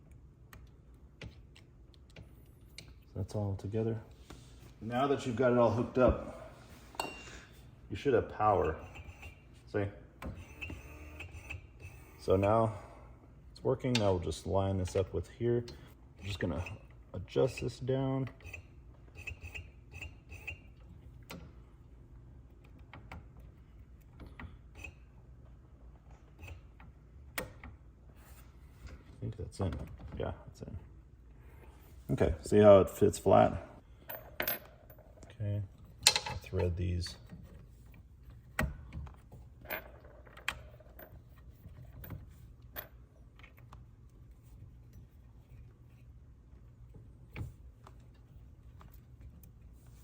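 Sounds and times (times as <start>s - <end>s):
metal parts clicking and knocking: 35.9s - 37.4s.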